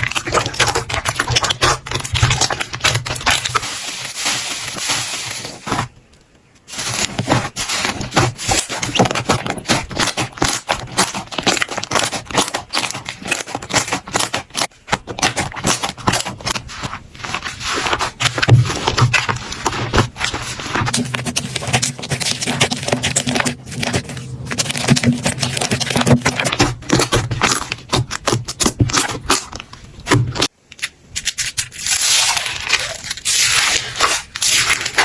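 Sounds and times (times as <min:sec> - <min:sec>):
slime crackling and popping: 0:00.0 - 0:05.9, 0:06.7 - 0:19.4, 0:20.4 - 0:30.6.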